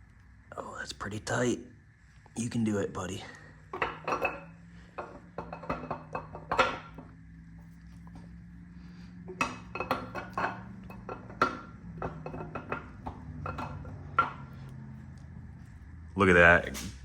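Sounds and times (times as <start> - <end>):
low steady hum: 0.0 - 17.0
metal clinking and knocking: 3.2 - 16.0.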